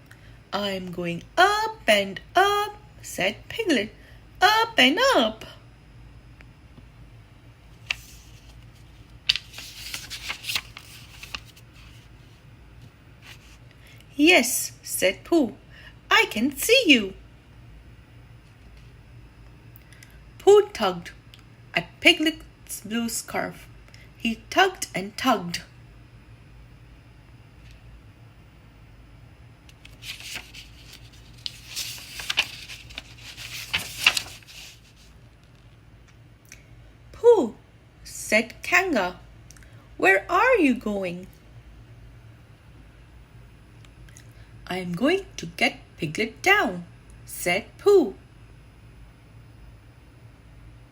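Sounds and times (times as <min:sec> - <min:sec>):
paper pages rustling: 0:07.8 - 0:12.4, 0:13.2 - 0:13.6, 0:29.7 - 0:35.2.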